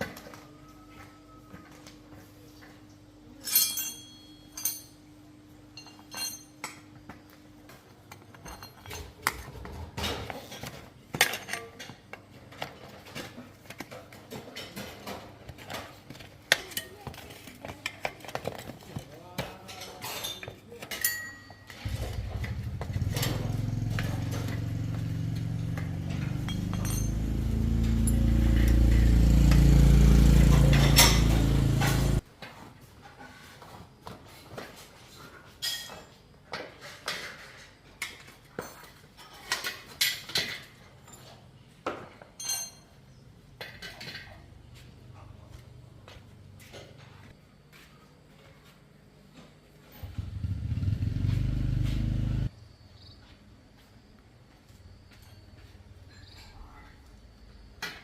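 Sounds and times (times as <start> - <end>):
hand tools clinking on metal: 3.4 - 5.1, 5.7 - 6.9, 8.0 - 9.5, 10.3 - 18.7, 19.4 - 32.2, 35.6 - 36.2, 42.2 - 44.5.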